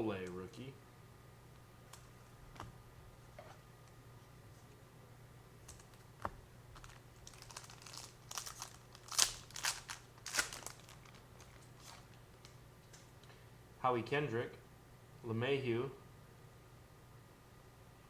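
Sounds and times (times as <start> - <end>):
foil wrapper crinkling: 6.7 - 12.6.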